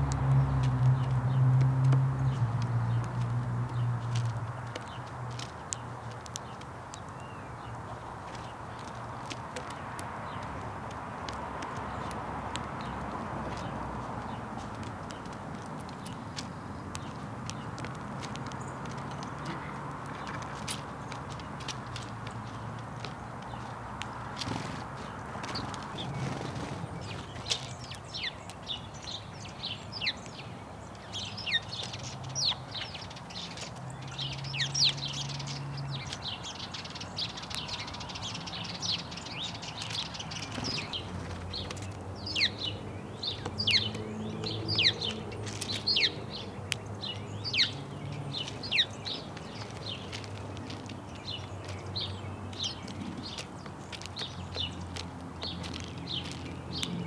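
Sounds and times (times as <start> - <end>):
sparrows chirping: 0.0 - 57.0.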